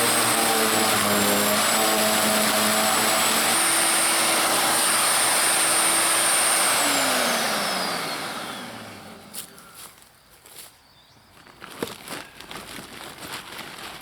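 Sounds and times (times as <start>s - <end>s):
motor winding down: 0.0s - 9.5s
wood chipper whining: 0.0s - 9.8s.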